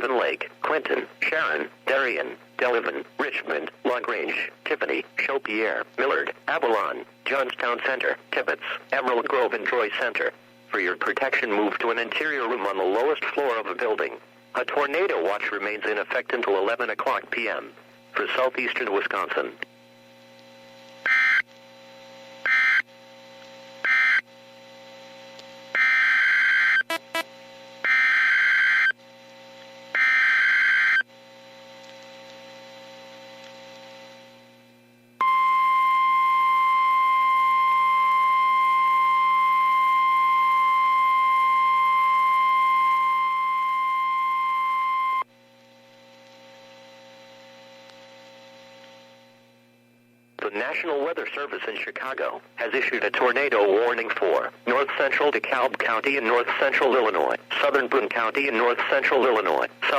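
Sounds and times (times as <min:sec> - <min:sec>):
low receiver hum: 0:00.0 - 0:59.9
warning alarm tone: 0:21.1 - 0:21.4, 0:22.5 - 0:22.8, 0:23.8 - 0:24.2, 0:25.8 - 0:27.3, 0:27.9 - 0:29.0.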